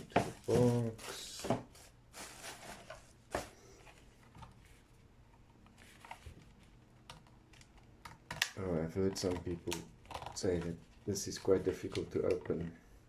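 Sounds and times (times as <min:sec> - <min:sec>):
cardboard and paper rustling: 0:00.0 - 0:04.9, 0:05.7 - 0:06.8.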